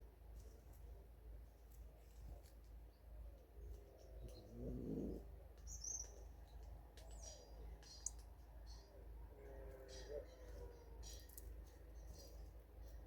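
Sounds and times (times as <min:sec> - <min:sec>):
faint bird calls: 0:07.0 - 0:13.0.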